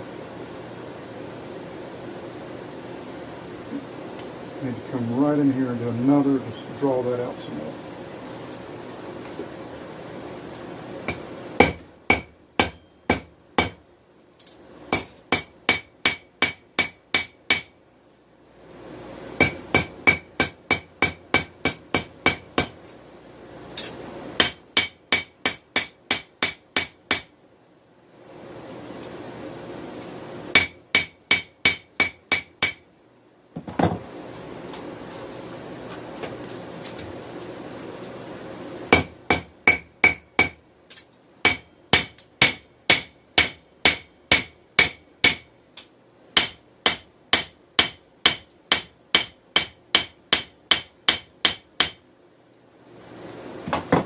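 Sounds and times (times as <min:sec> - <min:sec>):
hammer on steel on anvil: 0:11.1 - 0:13.8, 0:14.9 - 0:17.7, 0:19.4 - 0:22.8, 0:23.8 - 0:27.3, 0:30.5 - 0:32.8, 0:38.9 - 0:40.6, 0:41.4 - 0:45.5, 0:46.4 - 0:52.0.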